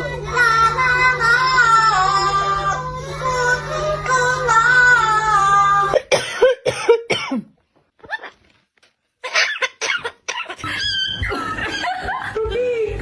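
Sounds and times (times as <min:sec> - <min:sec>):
person coughing: 0:05.9 - 0:07.6, 0:09.2 - 0:10.6.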